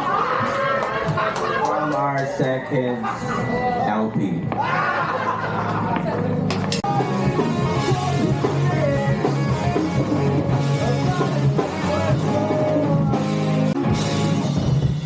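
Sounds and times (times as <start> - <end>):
live rock band playing: 6.7 - 15.0.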